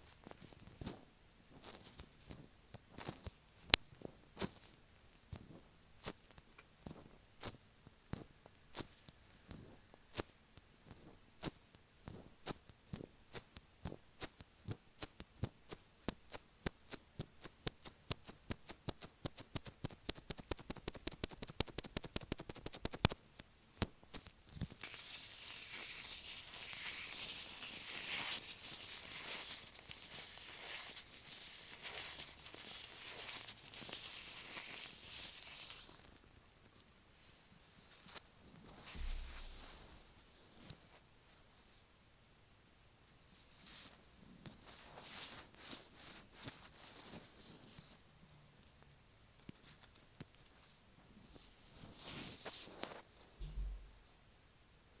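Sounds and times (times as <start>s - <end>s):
scratchy rubbing on microphone: 24.8s - 36.0s, 38.7s - 40.6s
gloved fingers tapping microphone: 53.4s - 54.0s.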